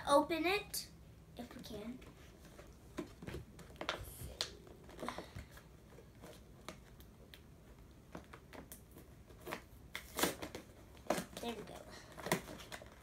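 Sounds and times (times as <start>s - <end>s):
toy packaging clicks and crinkles: 8.5s - 13.0s.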